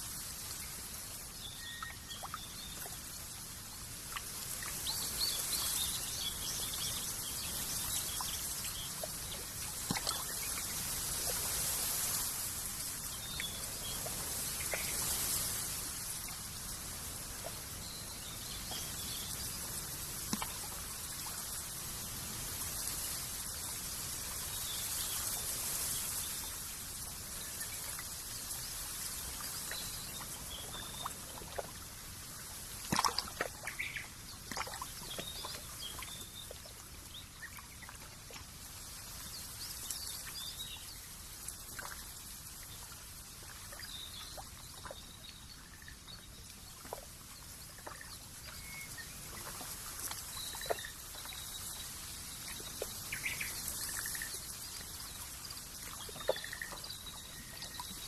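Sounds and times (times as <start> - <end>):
steady high hiss: 0.0 - 32.9
water trickling and dripping: 0.0 - 58.0
bird chirps: 1.5 - 2.8.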